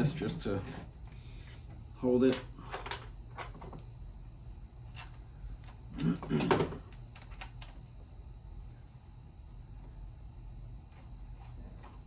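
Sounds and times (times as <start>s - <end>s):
small parts and screws clicking: 4.8s - 7.9s.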